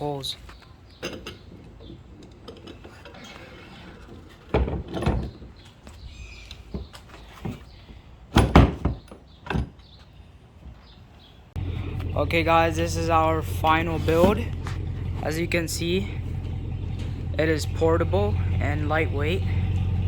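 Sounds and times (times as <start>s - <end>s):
wooden knocks and clunks: 4.0s - 5.7s, 8.3s - 9.8s.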